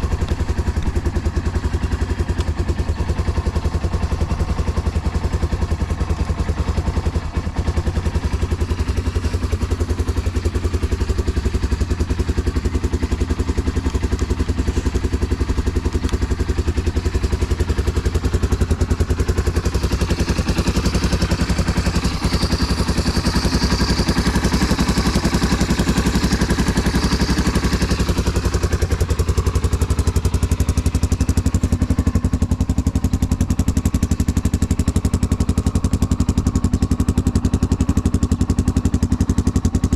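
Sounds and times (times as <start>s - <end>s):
motorcycle engine idling: 0.0s - 39.9s.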